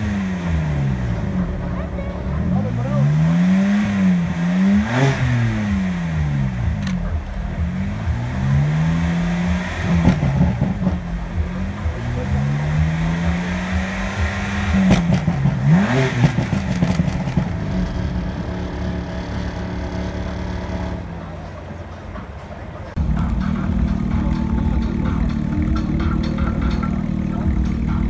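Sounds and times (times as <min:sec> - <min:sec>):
car engine revving: 0:00.0 - 0:28.0
engine cracks: 0:00.0 - 0:28.0.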